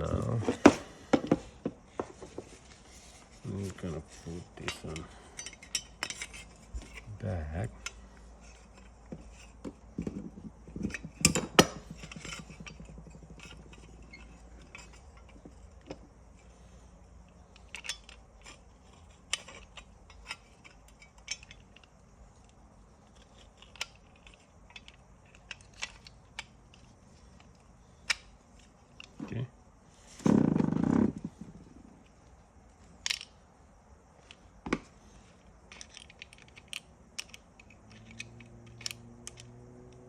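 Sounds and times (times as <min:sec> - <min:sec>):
metal parts clicking and clinking: 0:02.2 - 0:16.6, 0:17.2 - 0:29.4, 0:32.8 - 0:33.4, 0:35.4 - 0:40.0.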